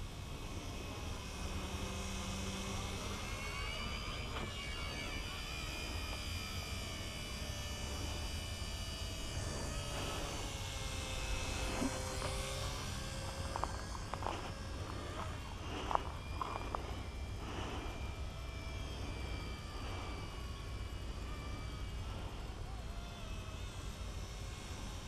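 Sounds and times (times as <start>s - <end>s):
toy helicopter motor whine: 0.0s - 25.0s
low rumble: 5.6s - 22.6s.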